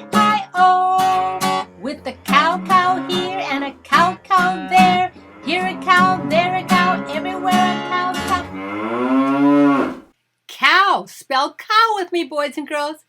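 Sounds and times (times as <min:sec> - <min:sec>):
person singing children's song: 0:00.0 - 0:08.6
strummed acoustic guitar: 0:00.0 - 0:08.6.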